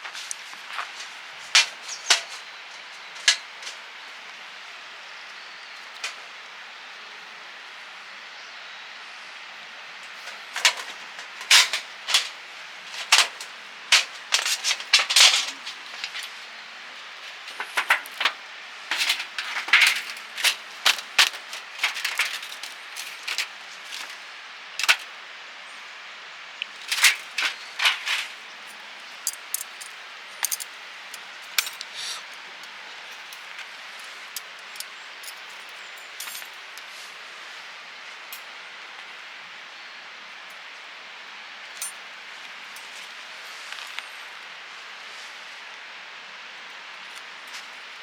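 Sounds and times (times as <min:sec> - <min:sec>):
faint steady hiss: 0:00.0 - 0:48.0
wood fire crackling: 0:10.1 - 0:25.2, 0:26.6 - 0:39.4.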